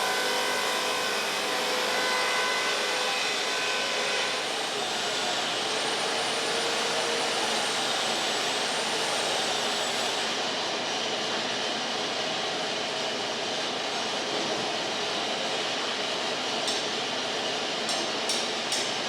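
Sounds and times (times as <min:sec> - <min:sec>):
band sawmill running: 0:00.0 - 0:11.6.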